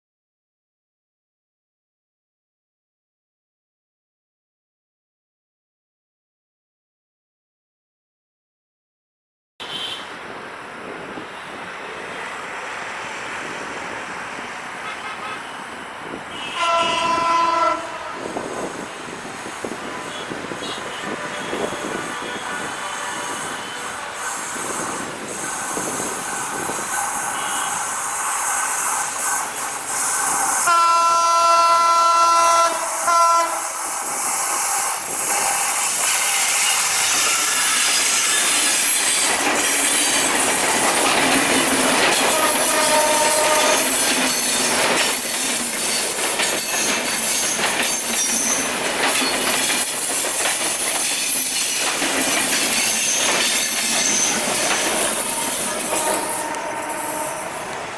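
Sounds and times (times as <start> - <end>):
locomotive air horn blasts: 14.8 - 15.6, 16.3 - 18.6, 19.8 - 24.6, 26.3 - 28.7, 30.6 - 33.8, 42.2 - 44.0, 54.9 - 57.8
train wheels squealing: 18.2 - 30.7, 32.4 - 57.9
train wheels clattering over rail joints: 34.5 - 57.9.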